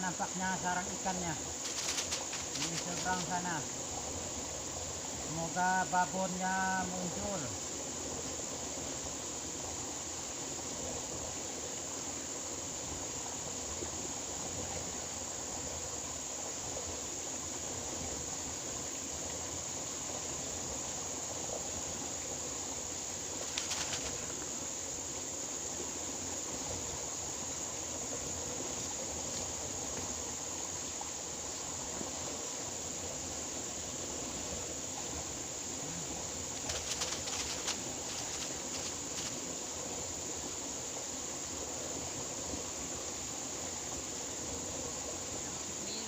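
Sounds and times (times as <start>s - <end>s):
water-like rushing noise: 0.0s - 46.0s
rattle of clicks: 1.6s - 3.2s, 23.4s - 24.2s, 36.6s - 39.4s.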